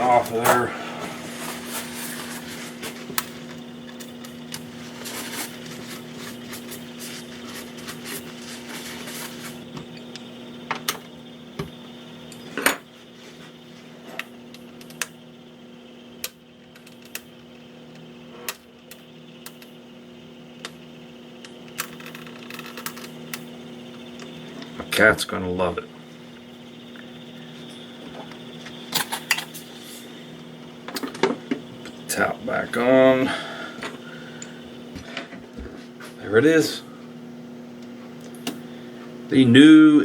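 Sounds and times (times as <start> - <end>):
rag rubbing: 0.0 - 3.5, 4.7 - 9.7.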